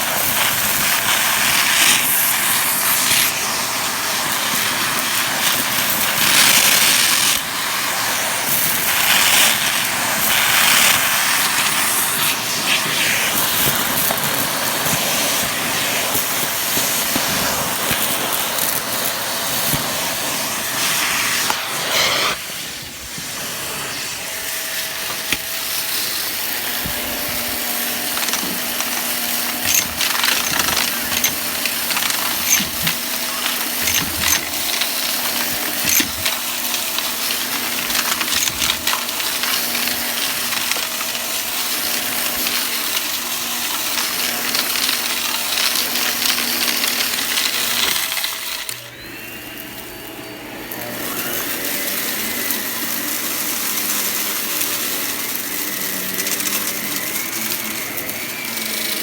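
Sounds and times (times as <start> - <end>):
vacuum cleaner sucking debris: 0.0 - 59.0
motor hum: 24.4 - 47.1
debris clicks and rattles: 26.8 - 41.1.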